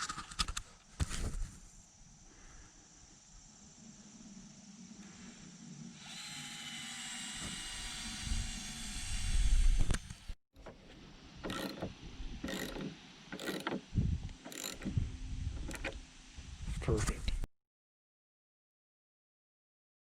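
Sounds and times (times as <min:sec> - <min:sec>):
steady mechanical sound: 0:06.0 - 0:16.0
socket ratchet wrench cranking: 0:11.4 - 0:14.9, 0:15.6 - 0:16.0.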